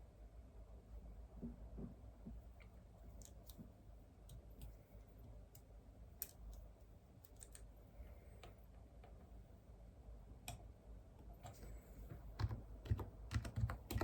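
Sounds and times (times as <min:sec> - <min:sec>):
computer keyboard typing: 0:12.3 - 0:14.0.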